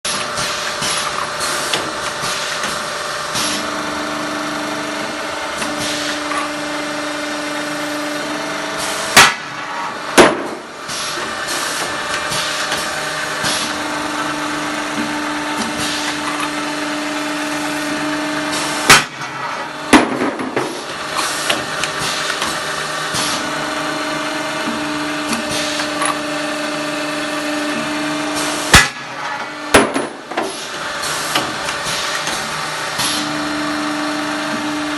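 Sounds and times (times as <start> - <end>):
machine whine: 0.1 - 34.9
machine clacking and knocking: 10.2 - 10.7, 28.8 - 30.6.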